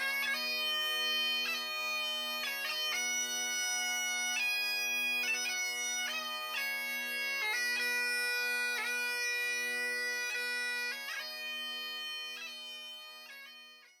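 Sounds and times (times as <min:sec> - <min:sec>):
bagpipes playing slow melody: 0:00.0 - 0:14.0.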